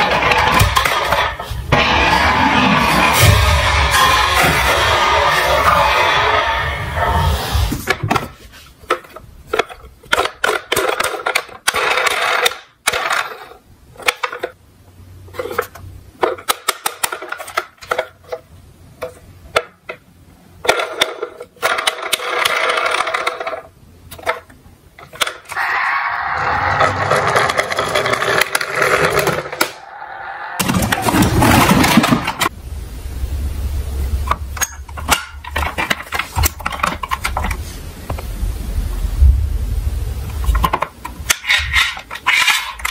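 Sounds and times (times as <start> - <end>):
toy cars rolling on track: 0.0 - 5.0, 9.6 - 14.6, 20.6 - 29.8, 40.5 - 42.9
toy cars clicking and knocking: 8.9 - 14.6, 15.3 - 20.0, 20.6 - 25.7, 26.8 - 29.7, 34.3 - 37.6, 40.3 - 42.9.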